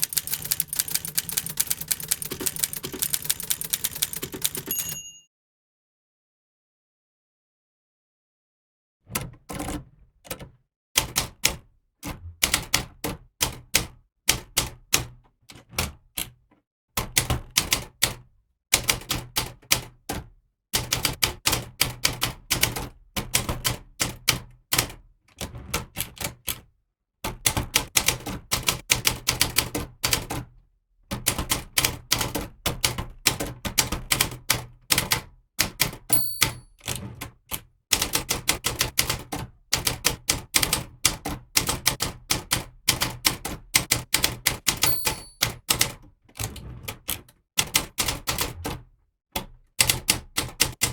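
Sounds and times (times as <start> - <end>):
typewriter keys clattering: 0.0 - 5.2, 35.7 - 37.3, 38.0 - 46.0
typewriter carriage bell: 0.0 - 5.3, 36.0 - 37.0, 44.6 - 46.0.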